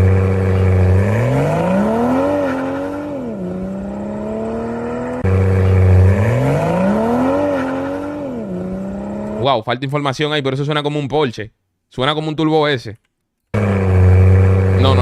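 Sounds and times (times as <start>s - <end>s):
car engine revving: 0.0s - 9.5s, 13.5s - 15.0s.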